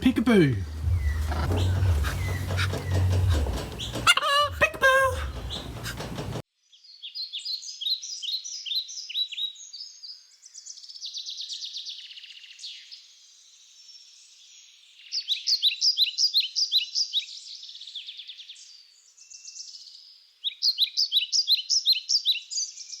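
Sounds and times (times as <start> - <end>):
buzzy bird trill: 0.0 - 6.4
songbirds chirping: 0.0 - 6.4.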